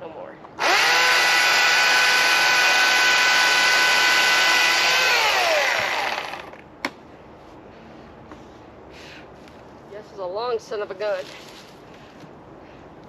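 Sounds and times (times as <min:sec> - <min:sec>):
chainsaw engine revving: 0:00.6 - 0:06.6.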